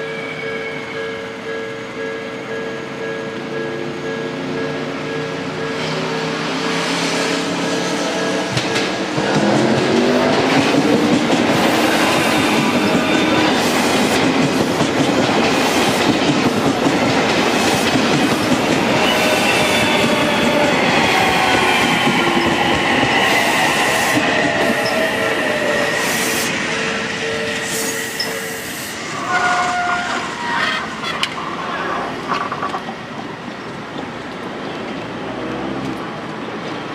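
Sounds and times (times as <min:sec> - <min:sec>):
train wheels clattering over rail joints: 0:08.2 - 0:23.3.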